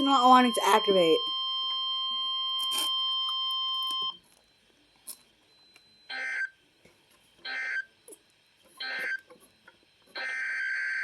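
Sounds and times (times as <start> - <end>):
weather radio alarm tone: 0.0 - 4.2.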